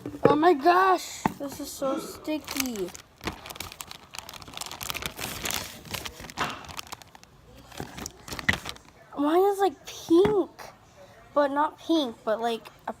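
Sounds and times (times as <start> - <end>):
plastic bag crinkling: 2.3 - 9.0.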